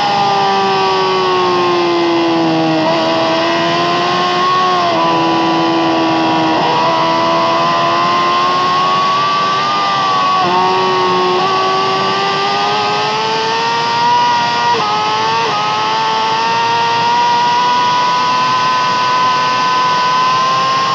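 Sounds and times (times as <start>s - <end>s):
motorcycle engine at high revs: 0.0s - 20.9s.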